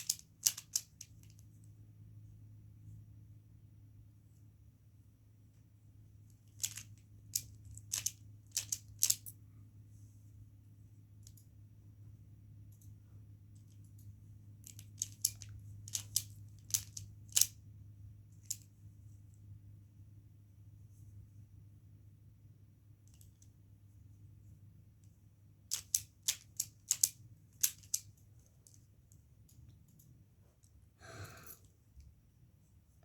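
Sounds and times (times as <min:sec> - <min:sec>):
puzzle layers clicking: 0:25.7 - 0:28.8.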